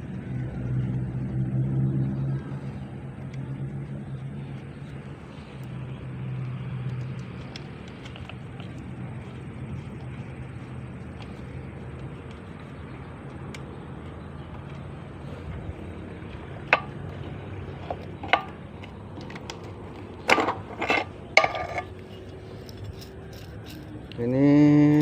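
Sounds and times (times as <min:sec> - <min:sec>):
steady low hum: 0:00.0 - 0:25.0
metal parts clinking: 0:20.3 - 0:24.0.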